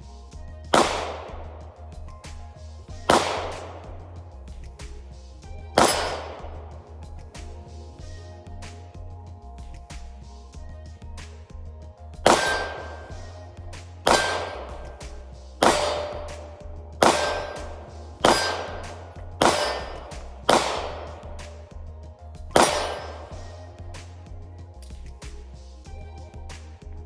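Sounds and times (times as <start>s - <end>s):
background music: 0.0s - 27.0s
gunshots with echoing tail: 0.7s - 4.2s, 5.4s - 7.5s, 12.2s - 21.9s, 22.5s - 23.9s.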